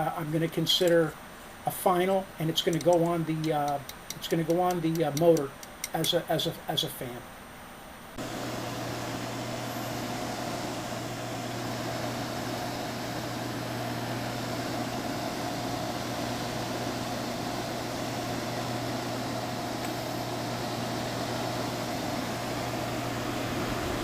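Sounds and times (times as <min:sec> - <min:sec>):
grinder motor humming: 0:08.2 - 0:24.0.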